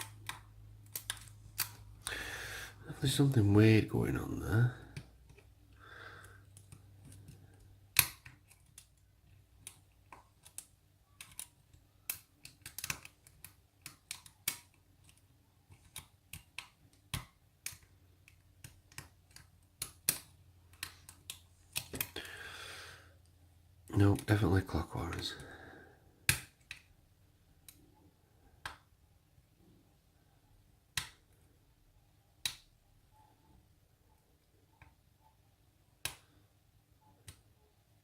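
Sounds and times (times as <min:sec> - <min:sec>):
lock pick metallic clicks: 0:07.9 - 0:08.9.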